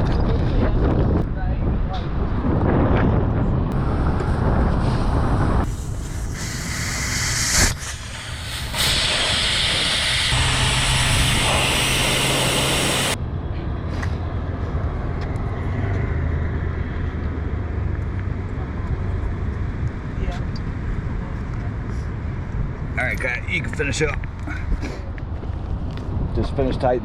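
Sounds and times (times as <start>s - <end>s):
steady low hum: 3.7s - 13.2s
air hissing out of tire valve: 3.8s - 13.2s.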